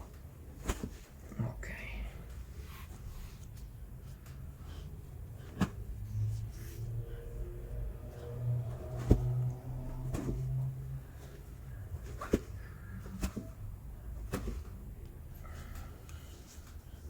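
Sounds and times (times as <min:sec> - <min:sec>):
low hum: 0:05.0 - 0:14.0.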